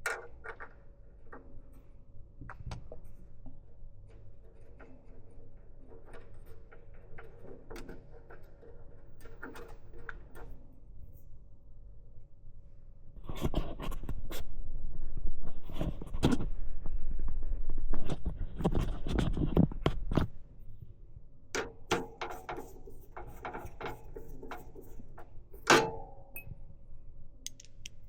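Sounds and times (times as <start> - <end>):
computer parts clicking and knocking: 21.6 - 26.6.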